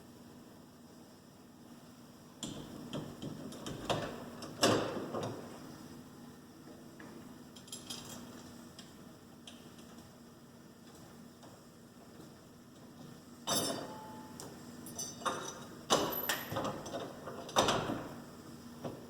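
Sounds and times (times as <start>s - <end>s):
metal handle parts clinking: 13.5s - 14.0s, 14.9s - 17.0s.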